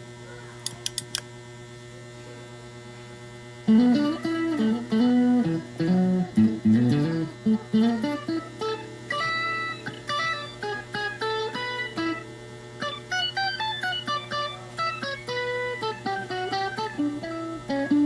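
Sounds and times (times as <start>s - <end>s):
amp hum: 0.0s - 18.0s
pitch-shifted electric guitar melody: 3.7s - 18.0s.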